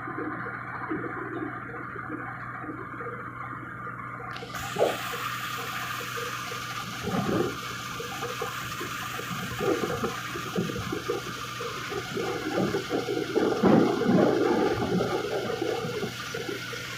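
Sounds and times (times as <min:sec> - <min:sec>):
combine harvester engine hum: 0:00.0 - 0:16.9
rushing hissing noise: 0:04.3 - 0:16.9.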